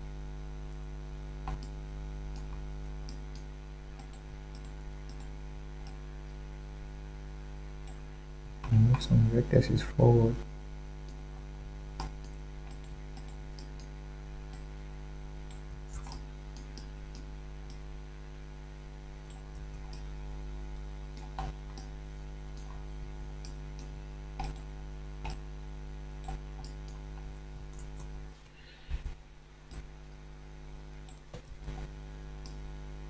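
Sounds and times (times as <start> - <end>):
steady electrical hum: 0.0 - 33.0
computer mouse clicking: 1.4 - 6.4, 7.8 - 8.0, 12.0 - 14.7, 15.5 - 17.8, 19.3 - 20.1, 21.1 - 21.9, 23.4 - 25.4, 26.2 - 28.2, 29.7 - 29.9, 31.0 - 32.6.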